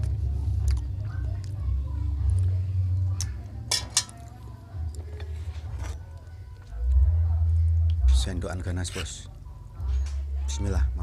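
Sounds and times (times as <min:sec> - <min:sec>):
spoon clinking against bowl: 0:03.7 - 0:04.3.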